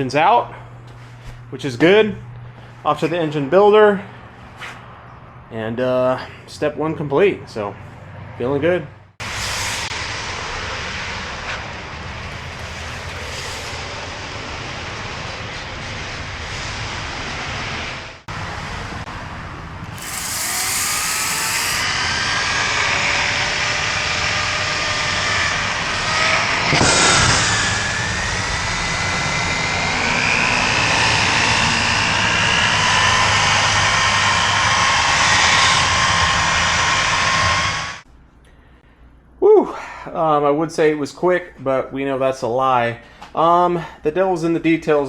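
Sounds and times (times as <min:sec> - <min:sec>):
pressure washer spraying: 0:19.9 - 0:21.9.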